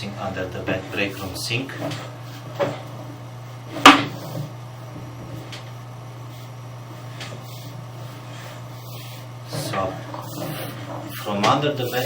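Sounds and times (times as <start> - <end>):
steady low hum: 0.0 - 12.0
sharp knock: 3.8 - 4.2.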